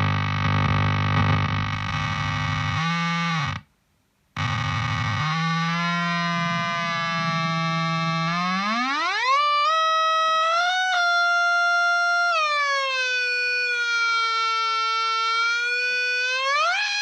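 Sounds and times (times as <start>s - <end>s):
fuzzed electric guitar tone: 0.0s - 3.6s, 4.4s - 9.3s.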